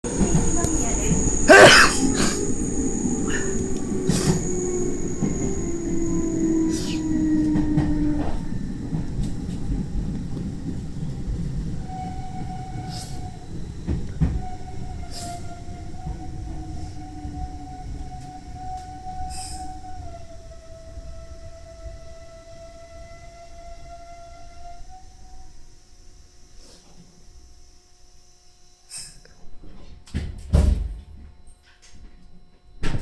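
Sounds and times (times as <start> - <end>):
high squeal: 0.0 - 9.7, 11.8 - 21.0
wheels rumbling: 0.0 - 20.0
train whine falling in pitch: 0.0 - 25.7.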